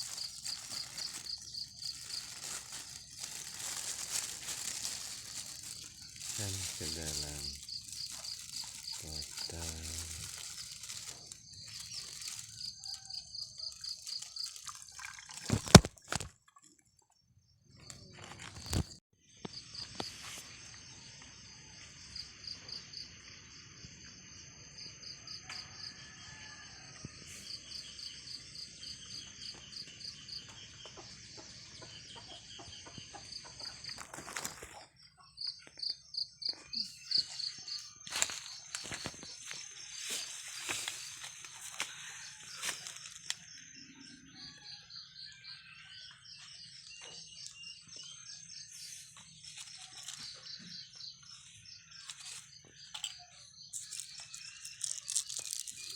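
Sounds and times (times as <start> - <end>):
insects chirping in pulsing trill: 0.0 - 15.6.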